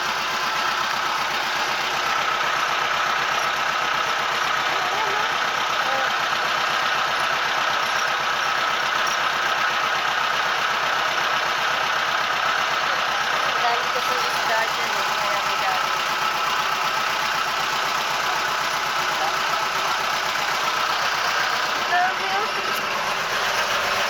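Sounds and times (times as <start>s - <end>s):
steady engine whine: 0.0s - 24.0s
boat engine droning: 12.8s - 24.0s.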